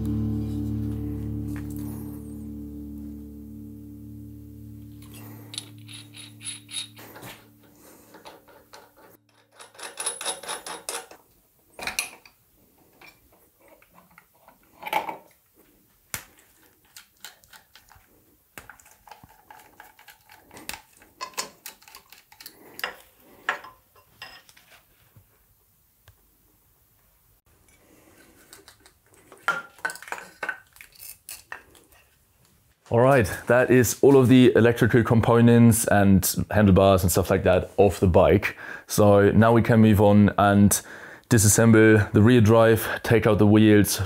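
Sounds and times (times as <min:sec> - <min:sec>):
tools and metal parts clattering: 0:05.5 - 0:15.3, 0:18.8 - 0:24.7, 0:28.3 - 0:32.1.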